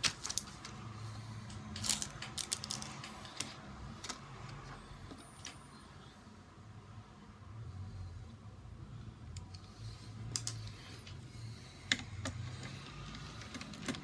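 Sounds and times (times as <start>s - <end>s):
small clicks and taps of parts: 10.3s - 11.2s, 11.8s - 14.0s.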